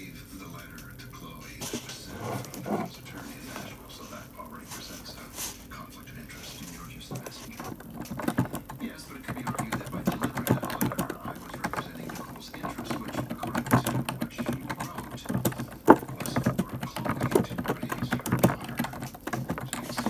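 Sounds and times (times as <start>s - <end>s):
low murmur: 0.0s - 20.0s
light clicks and knocks: 6.4s - 20.0s.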